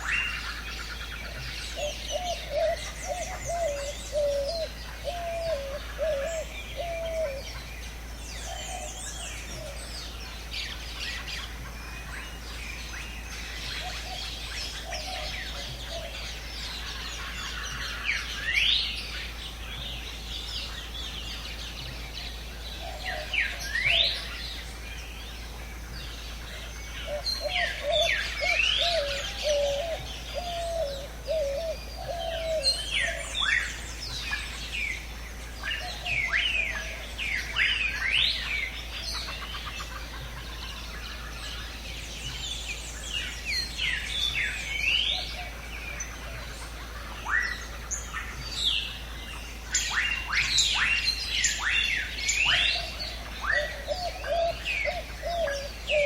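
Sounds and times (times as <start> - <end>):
low warbling bird call: 0.0 - 7.6, 26.0 - 56.0
birds chirping: 0.0 - 56.0.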